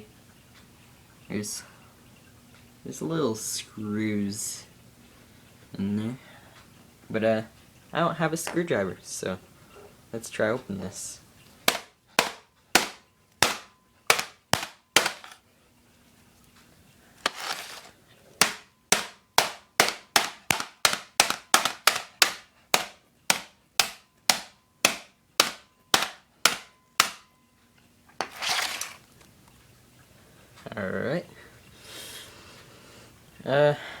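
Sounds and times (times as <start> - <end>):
hammer striking plastic case: 11.7 - 15.4, 17.3 - 27.3.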